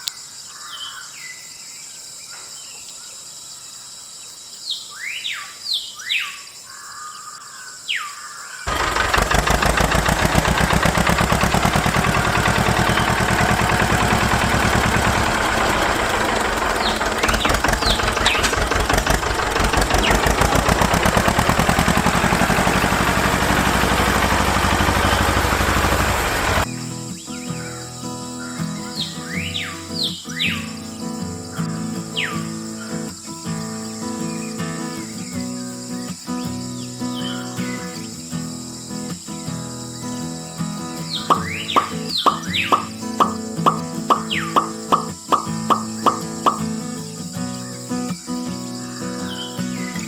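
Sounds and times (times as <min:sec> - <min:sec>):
birds chirping: 0:04.8 - 0:38.2, 0:38.8 - 0:50.0
small motor running with fast pulsing: 0:08.7 - 0:26.7.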